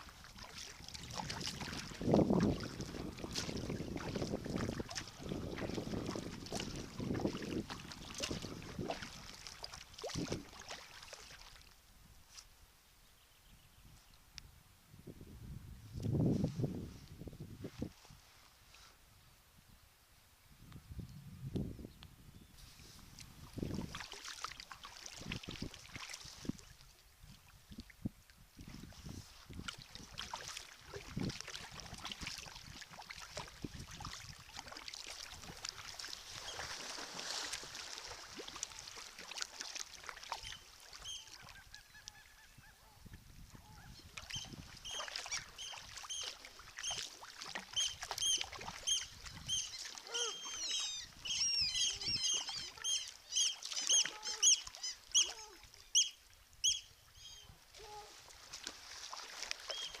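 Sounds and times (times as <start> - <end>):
paddle strokes splashing water: 0.0 - 12.5, 22.6 - 42.3, 43.4 - 60.0
short high bird calls: 40.4 - 42.9, 47.8 - 58.0, 59.7 - 60.0.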